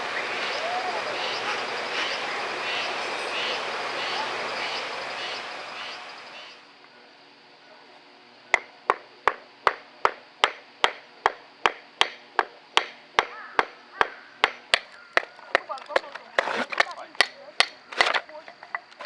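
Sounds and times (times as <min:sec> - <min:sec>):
steady noise: 0:00.0 - 0:06.8
wood chopping strikes: 0:08.6 - 0:18.2.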